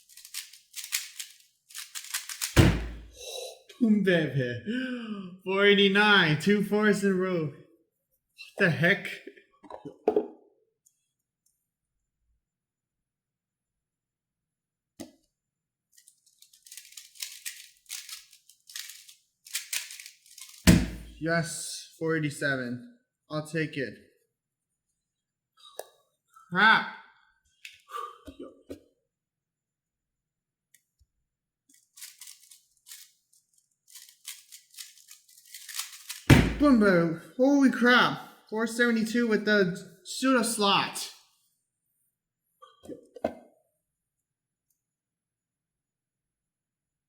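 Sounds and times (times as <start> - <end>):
plastic puzzle cube rattling: 0.0 - 2.6, 15.9 - 20.7, 31.7 - 36.3.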